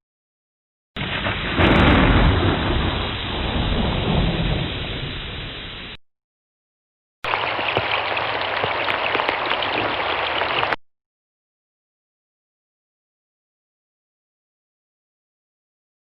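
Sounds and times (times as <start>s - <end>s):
heavy rain: 1.0s - 6.0s, 7.3s - 10.8s
thunder rumble: 1.0s - 6.0s.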